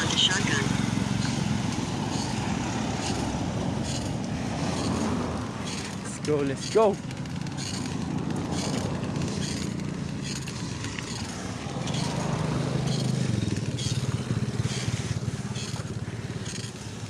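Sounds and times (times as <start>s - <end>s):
motorcycle engine under load: 0.0s - 17.0s
short rattles: 1.2s - 17.0s.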